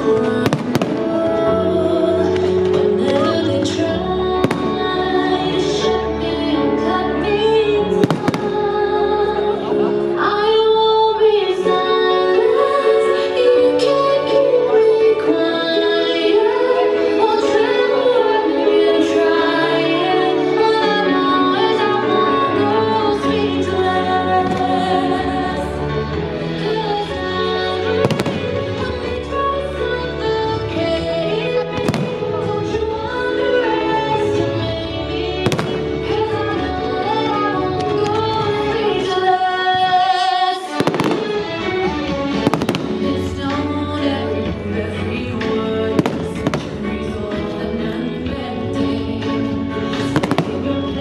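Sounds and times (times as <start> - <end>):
music with held notes: 0.0 - 51.0
fireworks bursting: 0.2 - 1.4, 8.0 - 8.7, 28.0 - 29.1, 31.8 - 32.9, 35.4 - 36.2, 40.7 - 43.6, 45.9 - 47.0, 50.0 - 51.0.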